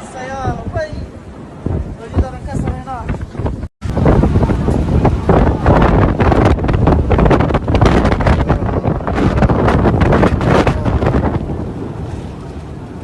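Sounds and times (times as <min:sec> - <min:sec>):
storm wind gusting on microphone: 0:00.0 - 0:13.0.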